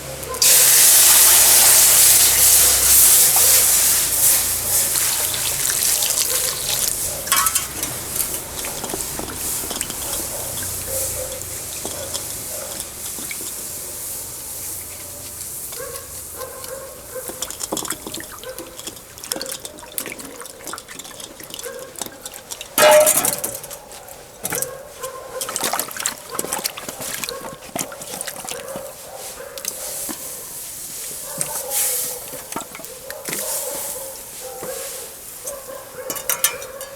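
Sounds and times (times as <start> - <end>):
water pouring and splashing: 0.0 - 36.9
knocks and clinks: 6.4 - 13.2, 22.8 - 23.7, 36.0 - 36.9.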